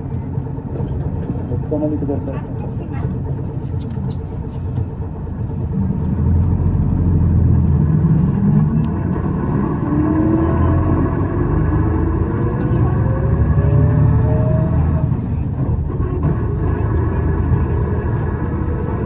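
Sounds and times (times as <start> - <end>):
bus diesel engine rumbling: 0.0 - 19.0.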